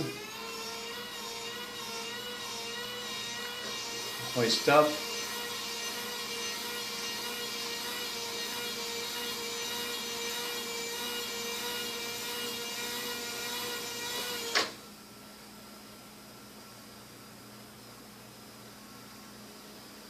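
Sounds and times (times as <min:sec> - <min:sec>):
electric hoist motor whine: 0:00.0 - 0:14.8.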